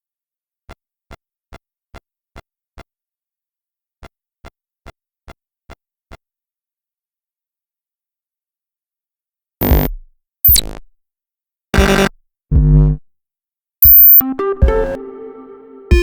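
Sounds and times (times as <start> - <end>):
short electronic pulses: 9.6 - 10.9, 11.8 - 12.1, 13.8 - 14.2.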